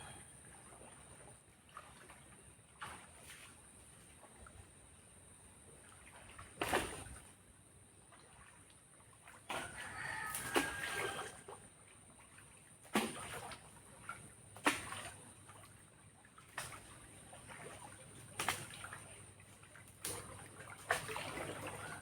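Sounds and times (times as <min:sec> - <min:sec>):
water splashing and sloshing: 0:00.0 - 0:22.0.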